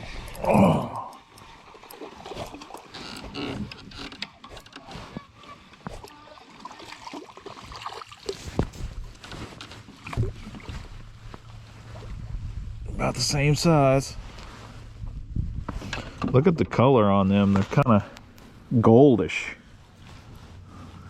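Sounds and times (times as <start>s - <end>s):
water splashes: 0.0s - 12.4s.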